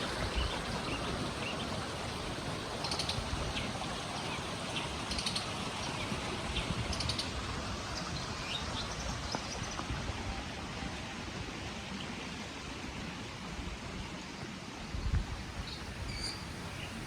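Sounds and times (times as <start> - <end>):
rushing water: 0.0 - 17.0
bird chirps: 15.7 - 17.0.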